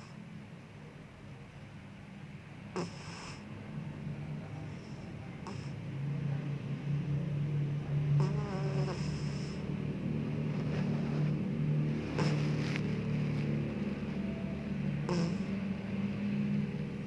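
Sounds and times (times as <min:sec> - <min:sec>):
cat snoring: 0:00.0 - 0:00.2, 0:02.7 - 0:05.9, 0:07.9 - 0:17.0.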